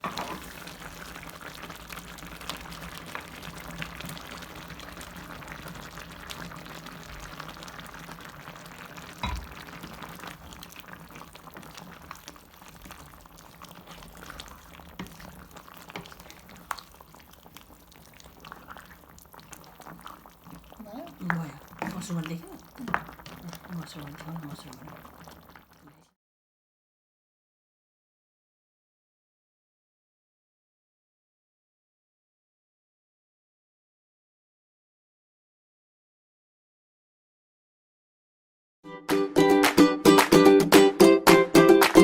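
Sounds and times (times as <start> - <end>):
soup bubbling in a pot: 0.0 - 26.0.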